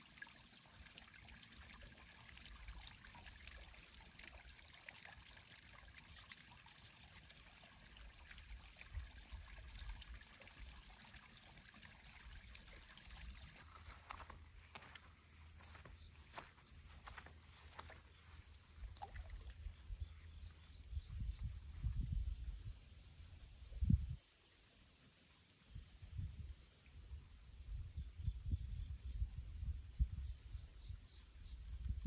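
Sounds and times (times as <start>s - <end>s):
water trickling and lapping: 0.0s - 24.0s.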